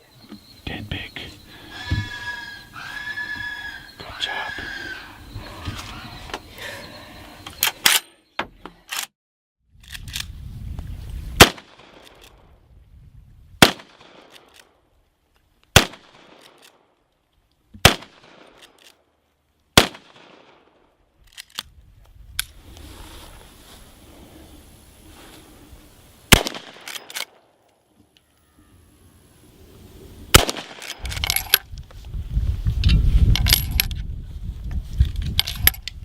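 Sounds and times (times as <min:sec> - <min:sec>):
gunshots echoing: 0:11.4 - 0:12.0, 0:13.6 - 0:14.4, 0:15.8 - 0:16.6, 0:17.8 - 0:18.6, 0:19.8 - 0:20.8, 0:26.3 - 0:27.4, 0:30.3 - 0:31.0.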